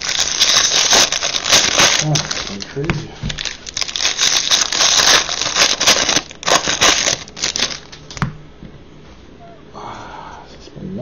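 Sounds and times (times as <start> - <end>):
cards rustling and clicking: 0.0 - 8.2
wrappers crinkling: 0.0 - 8.2.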